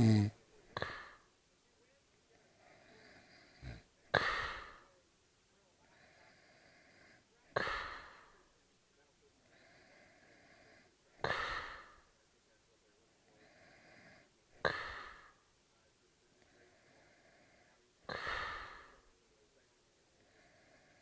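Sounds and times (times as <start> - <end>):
man snoring: 0.0 - 1.0, 3.0 - 3.8.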